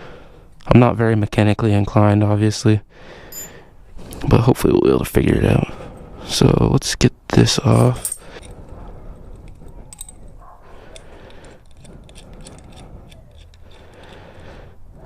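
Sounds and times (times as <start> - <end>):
metallic clicks of hand tools: 9.4 - 10.2, 10.9 - 14.4.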